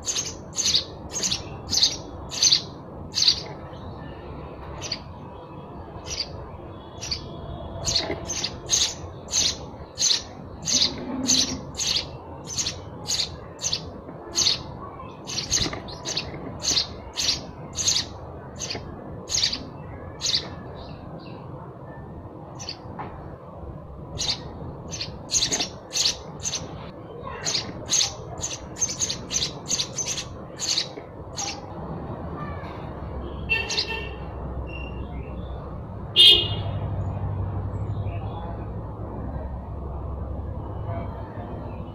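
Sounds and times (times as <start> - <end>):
sparrow chirping: 0.0 - 5.2, 5.8 - 21.4, 22.5 - 22.9, 24.0 - 31.8, 33.5 - 34.1, 34.7 - 35.6.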